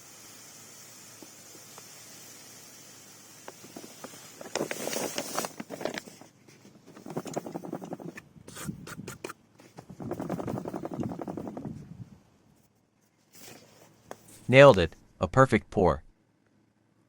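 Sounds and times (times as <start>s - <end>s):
sand pouring into a tank: 0.0s - 5.8s.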